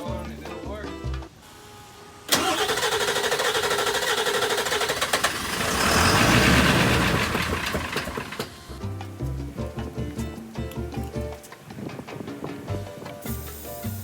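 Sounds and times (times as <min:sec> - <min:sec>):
diesel engine cranking and starting: 0:02.3 - 0:08.8.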